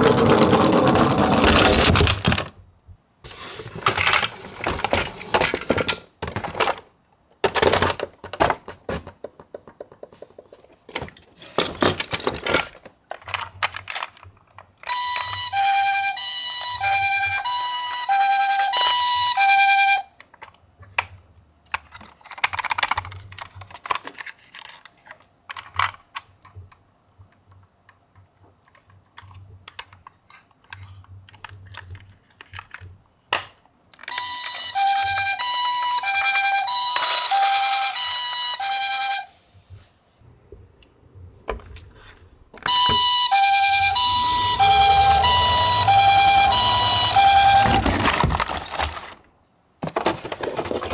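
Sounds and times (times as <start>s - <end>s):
plastic toys clicking and rattling: 3.8s - 14.9s, 21.7s - 32.9s, 36.8s - 38.4s, 43.8s - 50.9s
toy siren beeping: 14.9s - 20.1s, 34.1s - 39.3s, 42.6s - 48.8s.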